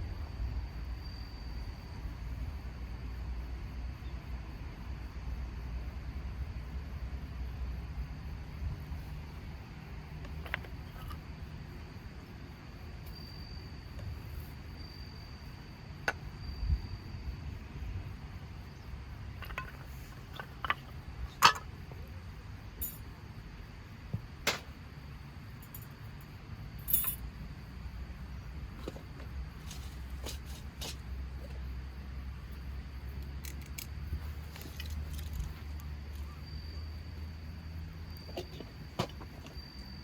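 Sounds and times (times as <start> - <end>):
light clinks and knocks: 10.2 - 11.2, 19.3 - 22.1, 26.8 - 27.3, 33.2 - 36.3, 38.2 - 39.9.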